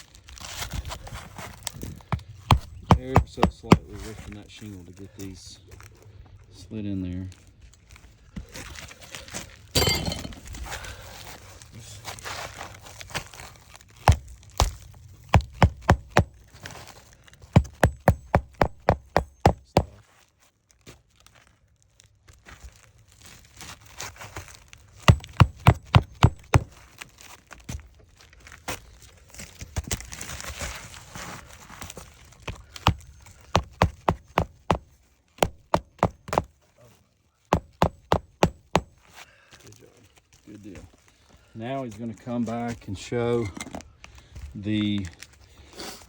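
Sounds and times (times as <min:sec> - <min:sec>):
hatchet hammering roofing nails: 0:02.2 - 0:04.0, 0:14.1 - 0:16.5, 0:17.5 - 0:20.0, 0:25.0 - 0:26.8, 0:32.5 - 0:36.5, 0:37.5 - 0:39.0.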